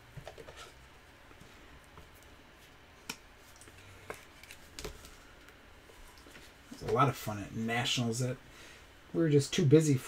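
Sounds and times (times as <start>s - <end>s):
quiet room noise: 0.0s - 10.0s.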